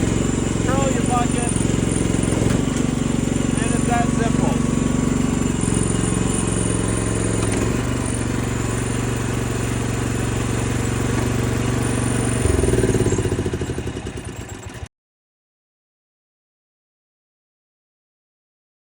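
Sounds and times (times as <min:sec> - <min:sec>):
small excavator engine running: 0:00.0 - 0:14.9.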